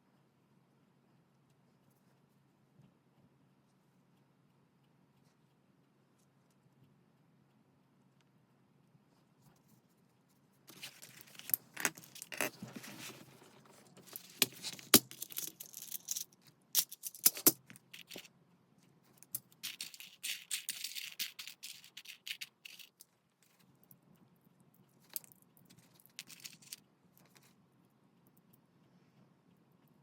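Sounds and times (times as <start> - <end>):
paper rustling: 10.7 - 15.8.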